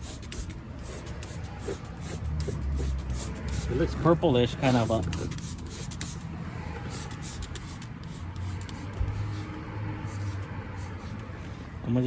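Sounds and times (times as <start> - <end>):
hissing and rubbing on carpet: 4.6 - 6.2, 6.9 - 9.5, 10.1 - 11.2.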